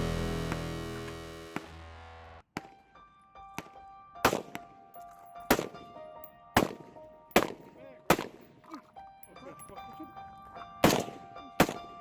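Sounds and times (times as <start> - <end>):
music playing: 0.0 - 2.4
gunshots: 10.8 - 11.9.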